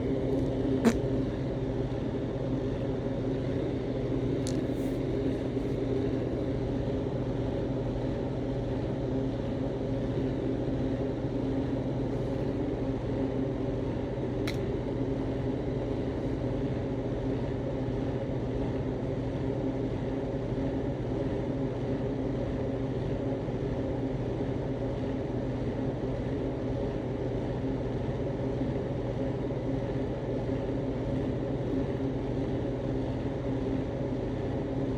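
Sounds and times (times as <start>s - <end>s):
low mechanical drone: 0.0s - 8.0s.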